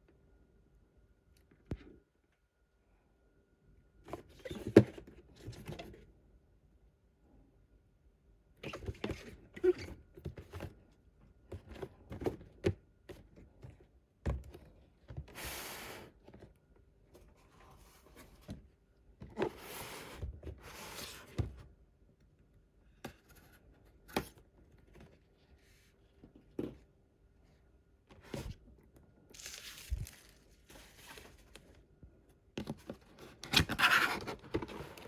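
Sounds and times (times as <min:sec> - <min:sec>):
packaging rustling: 0:29.4 - 0:31.8.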